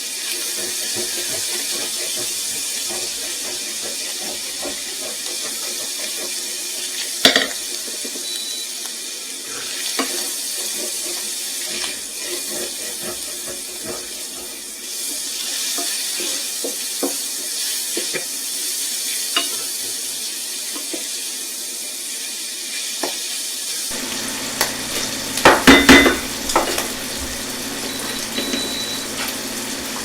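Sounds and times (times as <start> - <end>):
sausage sizzling in a frying pan: 0.0 - 30.0
utensil clicking while stirring: 0.3 - 6.5
loud knocks against a pan: 25.4 - 26.8.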